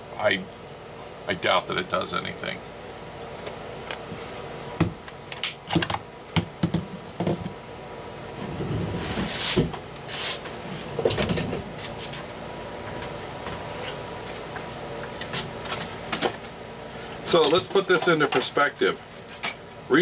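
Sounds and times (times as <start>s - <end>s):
scraping rustle: 8.4s - 12.3s.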